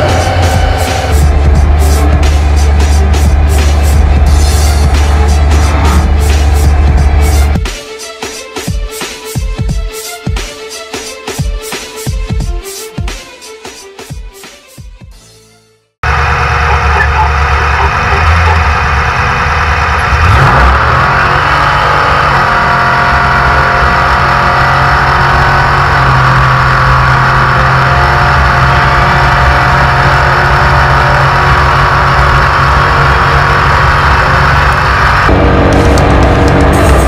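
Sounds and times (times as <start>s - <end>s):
truck engine running hard: 0.0s - 7.7s, 16.0s - 37.0s.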